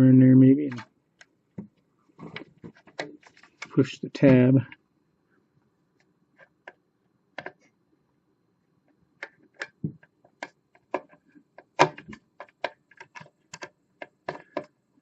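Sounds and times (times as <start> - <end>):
screwdriver clicking on plastic tabs: 9.2 - 14.7.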